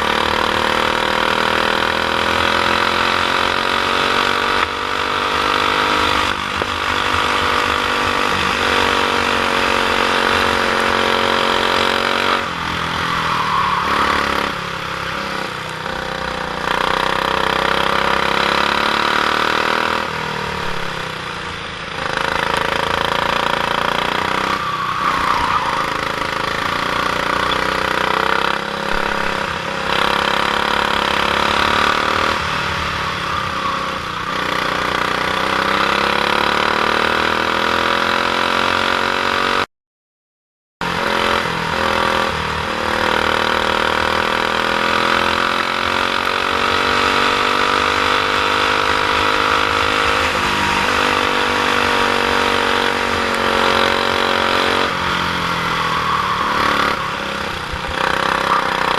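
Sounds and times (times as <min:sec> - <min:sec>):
kart engine revving: 0:00.0 - 0:39.7, 0:40.8 - 0:58.9.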